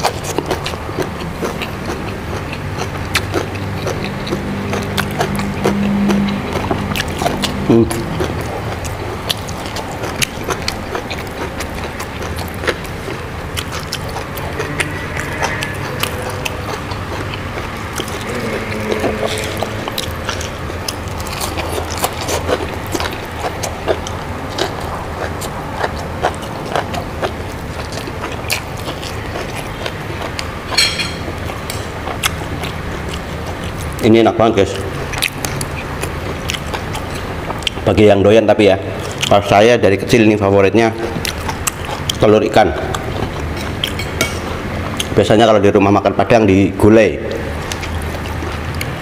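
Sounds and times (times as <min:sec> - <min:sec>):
chewing crunchy food: 0:00.0 - 0:46.0, 0:47.3 - 0:49.0.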